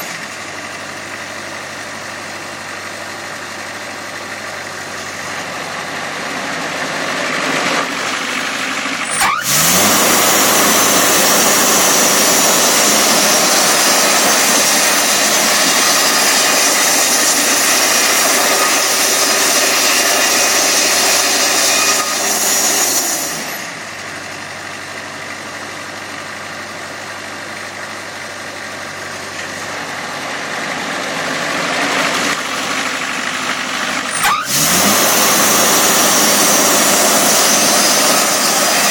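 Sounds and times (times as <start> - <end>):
sawmill engine running: 0.0 - 38.9
loud sawing noise: 4.8 - 24.1, 29.2 - 38.9.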